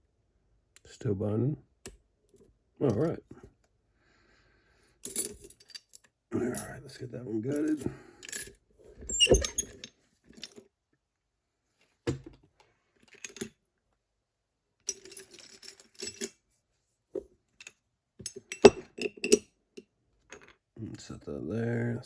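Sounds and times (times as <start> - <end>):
small metal clicks and clinks: 14.9 - 16.4, 17.6 - 20.6.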